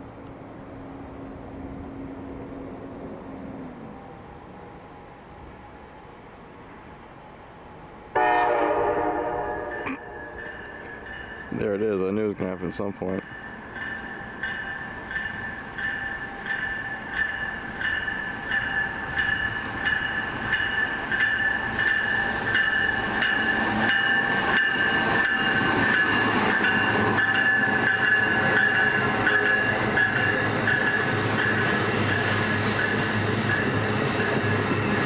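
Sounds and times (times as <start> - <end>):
high ringing: 9.2 - 11.8
train wheels clicking over rail joints: 12.6 - 35.0.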